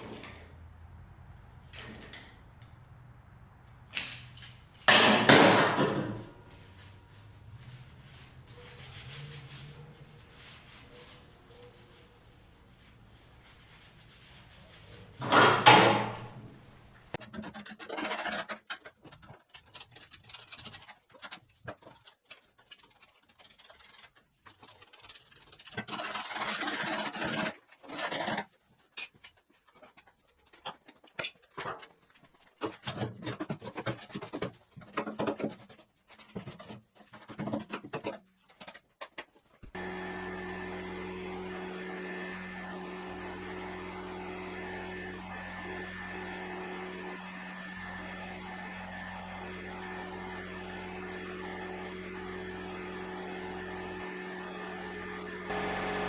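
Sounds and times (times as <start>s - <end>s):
tools scraping and knocking: 3.9s - 9.8s, 14.9s - 16.4s, 17.1s - 22.3s, 25.7s - 39.8s.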